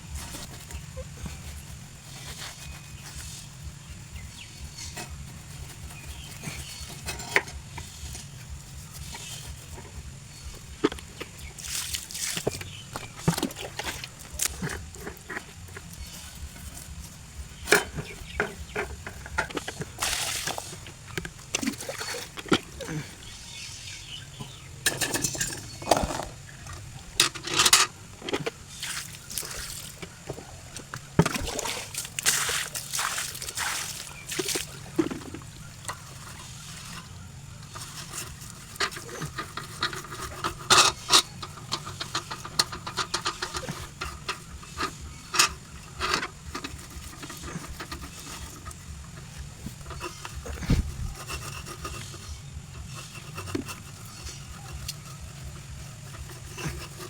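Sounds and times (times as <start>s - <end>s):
scraping and scrubbing: 0.0s - 57.0s
water splashing: 11.6s - 12.6s, 19.9s - 22.9s, 31.2s - 35.2s.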